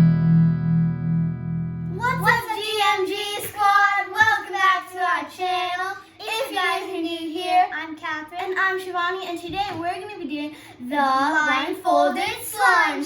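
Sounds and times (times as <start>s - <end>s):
guitar chord ringing: 0.0s - 2.2s
child singing: 1.9s - 13.0s.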